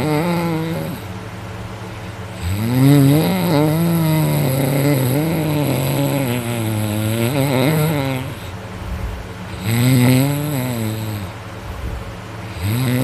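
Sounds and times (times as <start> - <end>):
man snoring loudly: 0.0 - 1.1, 2.4 - 8.6, 9.5 - 11.4, 12.5 - 13.0.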